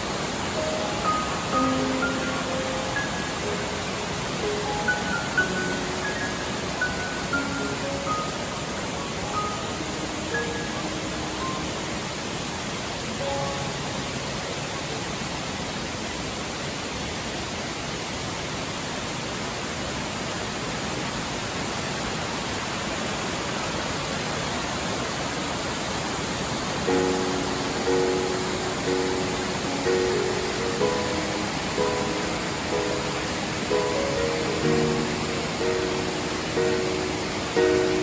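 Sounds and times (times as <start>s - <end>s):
soft musical notes: 0.0s - 14.9s, 26.9s - 38.0s
waterfall rushing: 0.0s - 38.0s.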